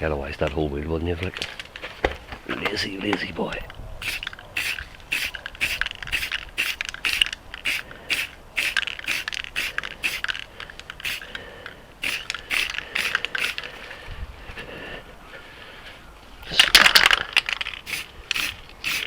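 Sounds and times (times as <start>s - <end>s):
spray can shaken rattling: 4.0s - 11.4s, 12.0s - 13.9s, 16.8s - 19.0s.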